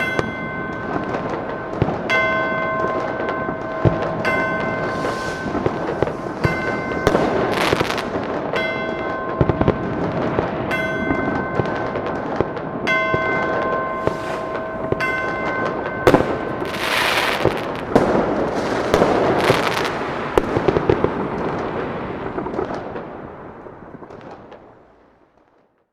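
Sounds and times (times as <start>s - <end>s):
clock bell striking: 0.0s - 10.0s, 10.7s - 12.1s, 12.9s - 17.5s
fireworks explosions and crackling: 0.0s - 25.9s
fireworks popping: 2.9s - 10.8s, 12.0s - 24.7s
loud bang: 3.8s - 9.2s, 14.0s - 16.7s.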